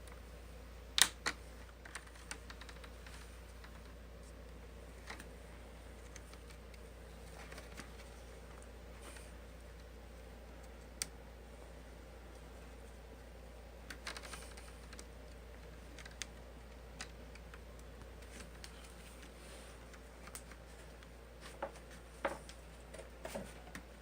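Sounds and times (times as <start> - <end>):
faint low hum: 0.0 - 24.0
plastic clips snapping: 1.0 - 2.8.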